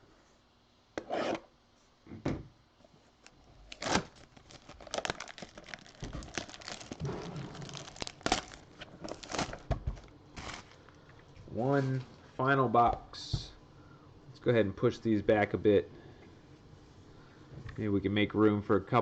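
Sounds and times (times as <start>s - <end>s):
plastic wrap tearing and crinkling: 3.2s - 10.9s.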